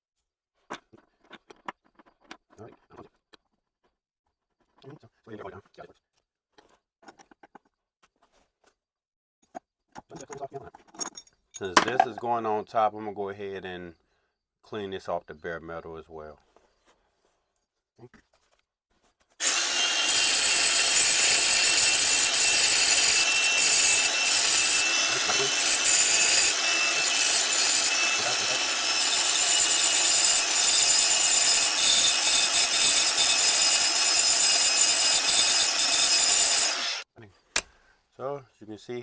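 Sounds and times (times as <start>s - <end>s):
power tool abrading metal: 19.4s - 37.0s.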